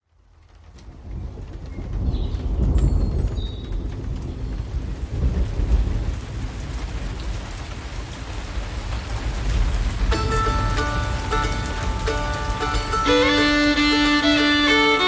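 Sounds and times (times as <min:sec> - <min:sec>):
steady rain: 0:00.0 - 0:15.0
low rolling thunder: 0:00.1 - 0:15.0
plucked and bowed strings: 0:10.1 - 0:15.0.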